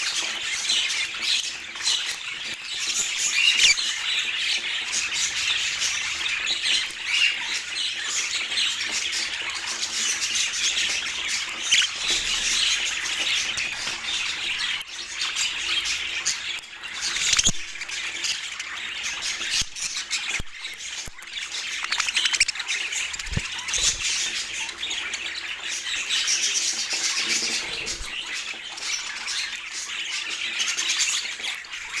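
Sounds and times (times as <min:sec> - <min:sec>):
budgerigars chattering: 0:00.0 - 0:32.0.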